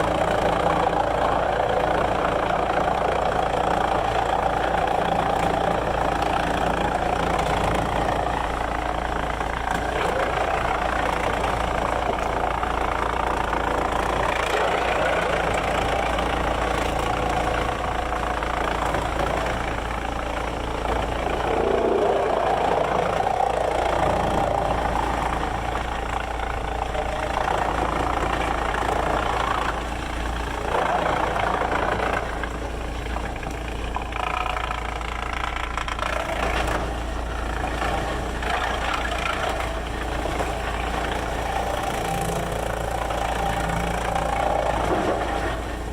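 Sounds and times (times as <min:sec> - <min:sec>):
sawmill machinery running: 0:00.0 - 0:45.9.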